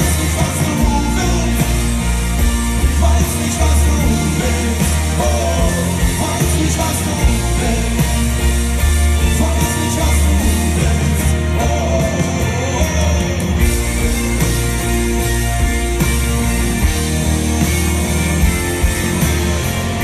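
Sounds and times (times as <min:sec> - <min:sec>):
amplified guitars: 0:00.0 - 0:20.0
bass: 0:00.0 - 0:20.0
drums: 0:00.0 - 0:20.0
person singing: 0:02.8 - 0:08.5.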